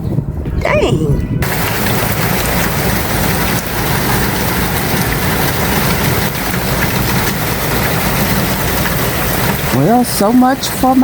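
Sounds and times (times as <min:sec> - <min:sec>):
low rumble: 0:00.0 - 0:07.5
heavy rain hiss: 0:01.4 - 0:11.0.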